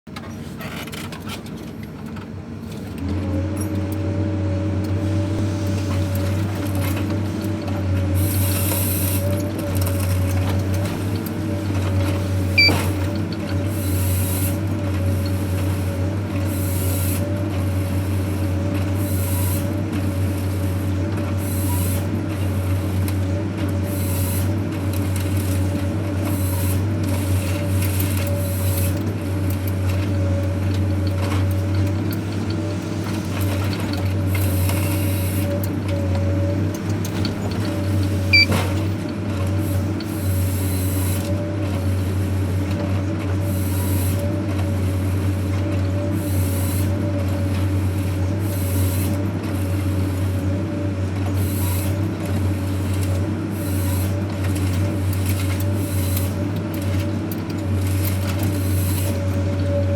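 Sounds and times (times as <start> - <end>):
machine engine droning: 2.9 - 16.8.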